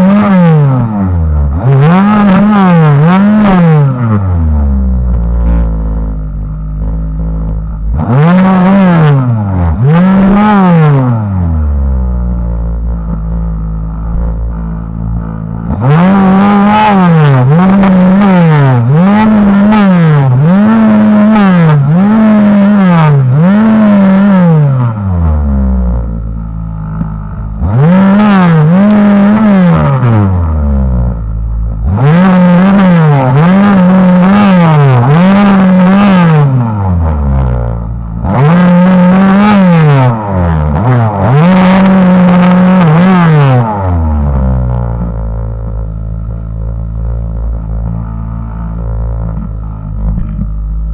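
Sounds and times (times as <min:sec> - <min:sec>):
chainsaw revving: 0:00.0 - 0:04.2, 0:07.9 - 0:11.6, 0:15.6 - 0:26.0, 0:27.6 - 0:31.1, 0:31.8 - 0:44.6.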